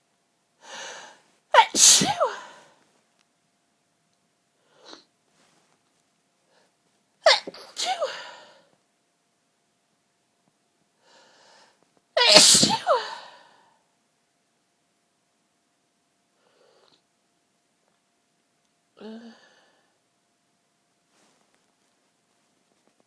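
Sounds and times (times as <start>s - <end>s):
person sneezing: 1.6s - 2.7s, 7.2s - 8.6s, 12.2s - 13.5s.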